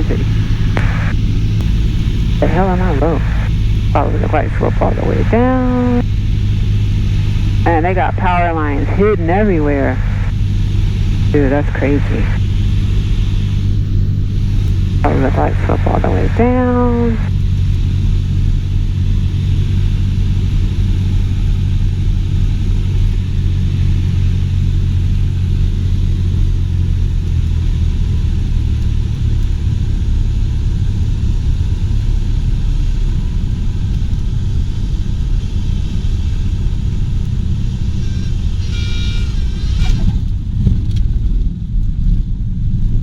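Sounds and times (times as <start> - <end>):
aircraft piston engine droning: 0.0 - 43.0.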